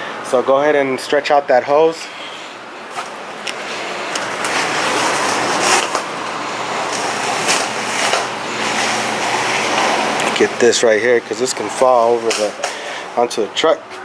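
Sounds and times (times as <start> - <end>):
hose scraping across floor: 3.0 - 13.2.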